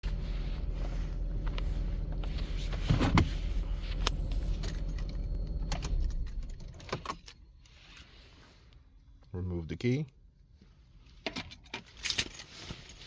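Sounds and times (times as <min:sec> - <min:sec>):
car engine humming: 0:00.0 - 0:07.6
car keys jangling: 0:00.1 - 0:07.4, 0:11.3 - 0:13.0.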